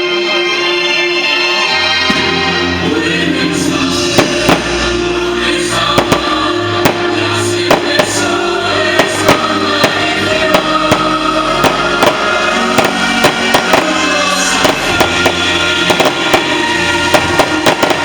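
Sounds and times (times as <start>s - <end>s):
music with singing over loudspeakers: 0.0s - 18.0s
fireworks bangs: 3.7s - 18.0s.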